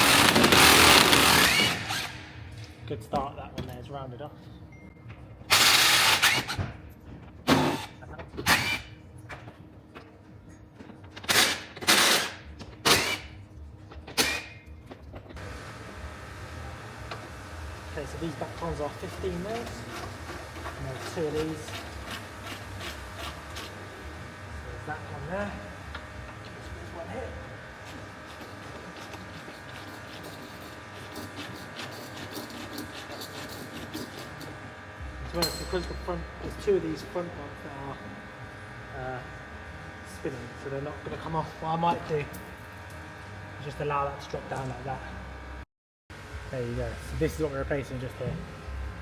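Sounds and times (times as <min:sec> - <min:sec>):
impact driver bursts: 0:00.0 - 0:02.3, 0:05.5 - 0:06.6.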